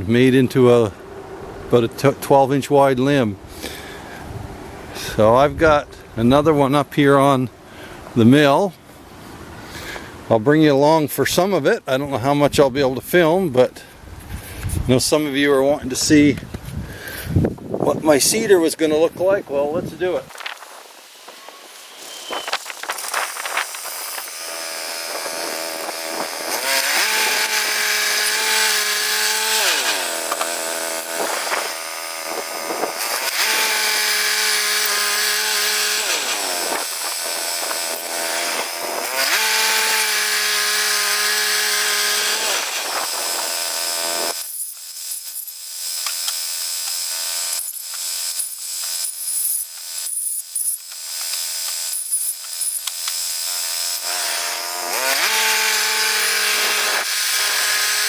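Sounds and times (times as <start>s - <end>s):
saw cutting through log: 20.3s - 58.0s
bandsaw mill engine: 21.0s - 58.0s.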